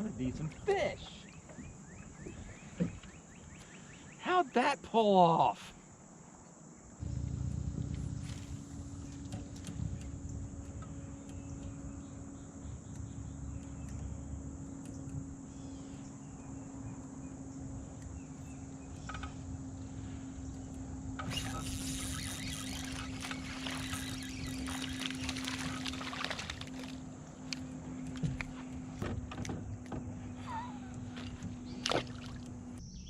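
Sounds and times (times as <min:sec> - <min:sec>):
steady low hum: 0:07.0 - 0:33.0
water splashing and trickling: 0:21.2 - 0:32.8.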